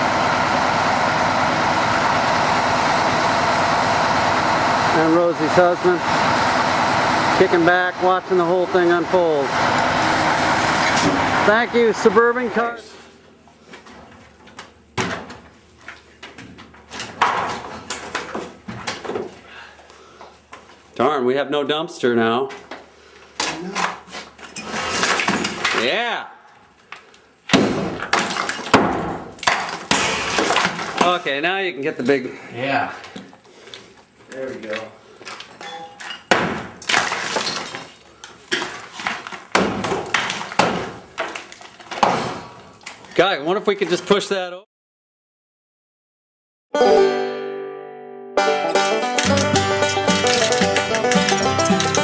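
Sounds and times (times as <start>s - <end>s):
debris crashing: 48.6s - 52.0s
glass shattering: 48.7s - 52.0s
knocks and clattering impacts: 48.7s - 52.0s.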